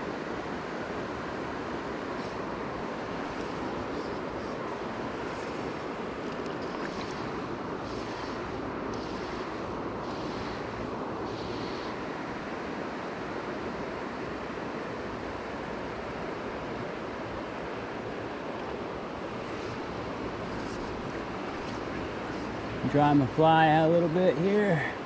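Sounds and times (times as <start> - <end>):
river running over gravel: 0.6 - 12.9, 16.4 - 25.0.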